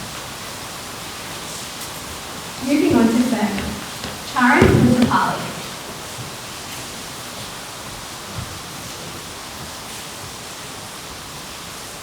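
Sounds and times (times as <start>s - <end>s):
background hiss: 0.0s - 12.0s
soft low thump: 2.8s - 5.7s.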